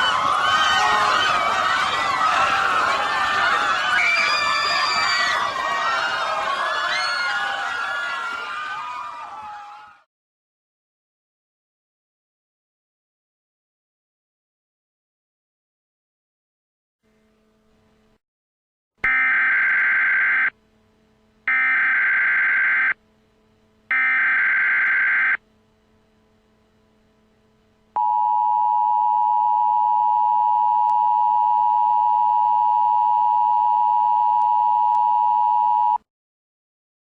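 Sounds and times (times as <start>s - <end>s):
faint steady hum: 19.1s - 36.0s.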